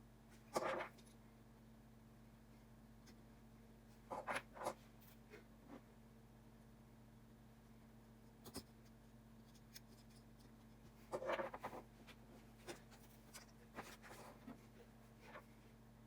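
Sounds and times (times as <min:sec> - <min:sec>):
rustling scrape: 0:11.0 - 0:15.6.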